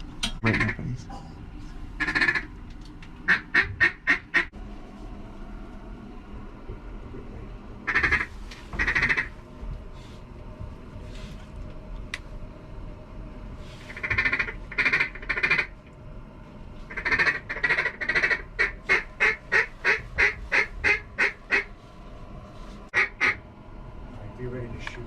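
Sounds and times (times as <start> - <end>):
duck quacking: 2.0 - 2.5, 3.3 - 4.5, 7.9 - 9.3, 14.0 - 15.7, 16.9 - 21.7, 22.9 - 23.4.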